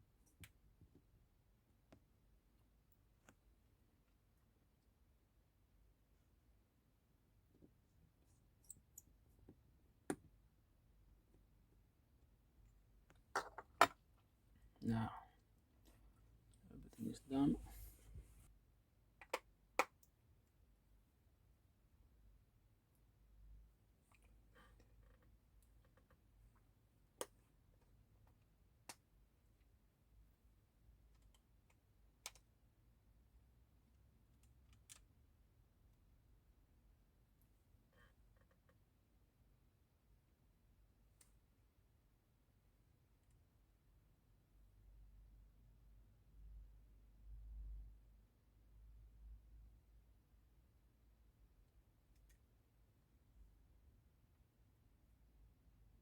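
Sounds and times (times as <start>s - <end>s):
small clicks and taps of tools: 19.2s - 20.2s, 31.1s - 32.5s, 34.3s - 35.1s.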